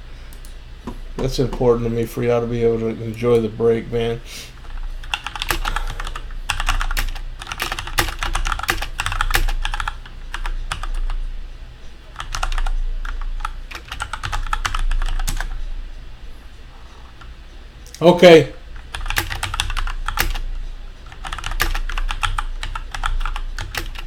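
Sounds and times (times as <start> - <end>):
typing on computer keyboard: 4.6 - 11.2, 12.1 - 15.6, 18.8 - 20.4, 21.0 - 24.0.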